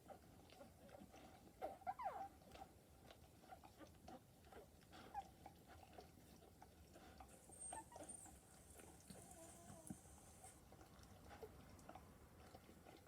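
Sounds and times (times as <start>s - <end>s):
puppies squeaking: 7.4s - 8.4s.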